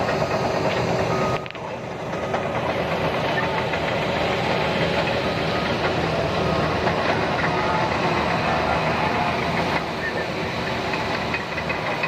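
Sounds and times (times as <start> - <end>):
bulldozer diesel engine running: 0.0 - 12.0.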